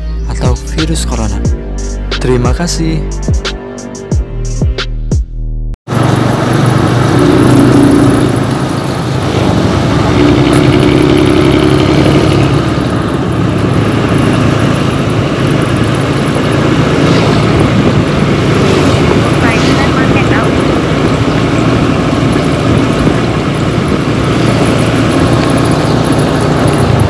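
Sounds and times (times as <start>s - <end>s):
bus diesel engine droning: 5.9s - 27.0s.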